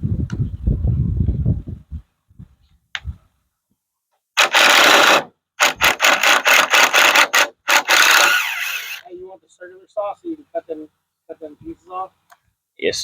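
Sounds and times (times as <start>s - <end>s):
hand saw cutting wood: 4.4s - 9.0s.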